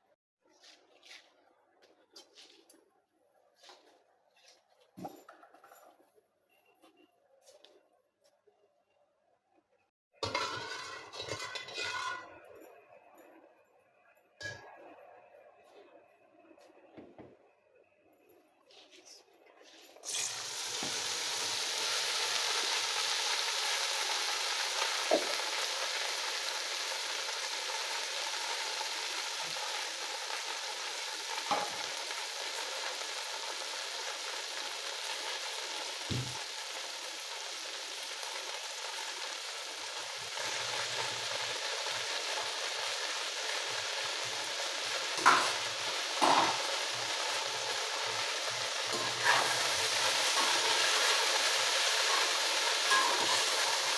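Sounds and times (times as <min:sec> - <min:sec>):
oil sizzling in a pan: 0:10.2 - 0:12.2, 0:20.0 - 0:53.9
spoon knocking against pan: 0:52.9 - 0:53.5.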